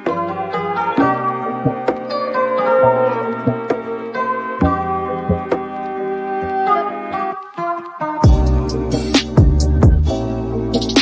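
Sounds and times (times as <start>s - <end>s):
low bass: 8.2s - 11.0s.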